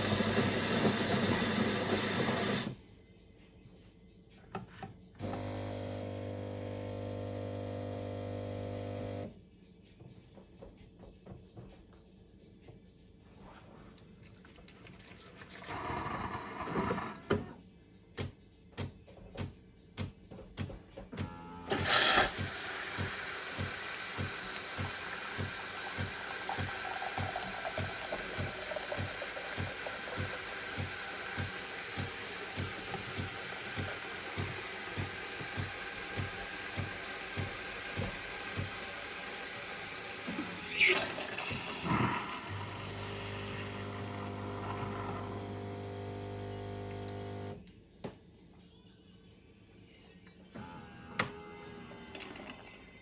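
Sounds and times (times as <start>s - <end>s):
coffee machine pump pulsing: 0.0s - 2.8s, 5.2s - 9.3s, 15.6s - 17.4s, 21.6s - 47.6s
coffee machine whirr: 0.0s - 2.8s, 5.2s - 9.3s, 15.5s - 17.4s, 21.2s - 47.6s, 50.6s - 53.0s.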